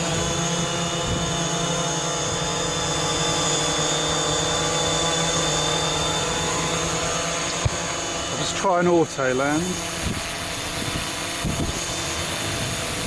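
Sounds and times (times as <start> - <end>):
wind buffeting microphone: 0.0 - 3.1, 9.7 - 13.0
drone buzzing in flight: 0.0 - 13.0.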